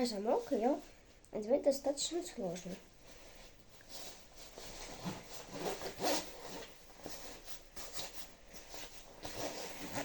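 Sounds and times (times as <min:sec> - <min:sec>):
fabric rustling: 0:02.4 - 0:10.0
jacket zipper zipping: 0:04.7 - 0:07.4, 0:09.2 - 0:10.0.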